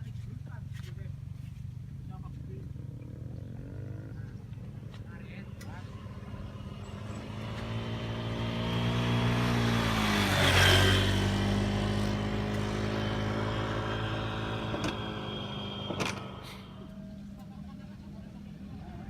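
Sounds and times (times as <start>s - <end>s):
vehicle passing by: 3.1s - 17.2s.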